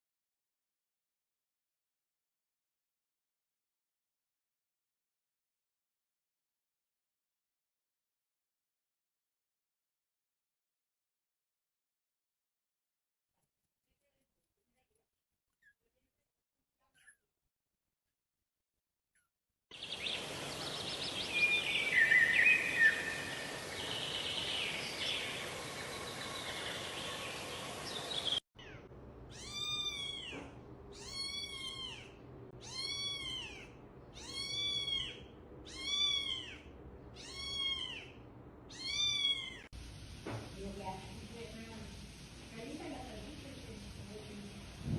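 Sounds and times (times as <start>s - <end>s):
high chirping sounds: 19.8s - 30.4s
cat meowing: 28.6s - 39.7s.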